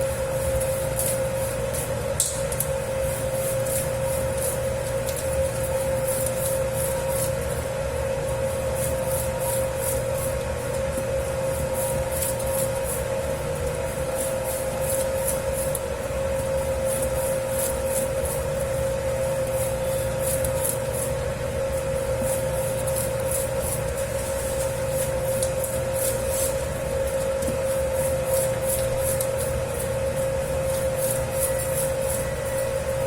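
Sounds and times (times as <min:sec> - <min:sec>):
dough kneading machine motor hum: 0:00.0 - 0:33.0
dough swishing in bowl: 0:00.0 - 0:33.0.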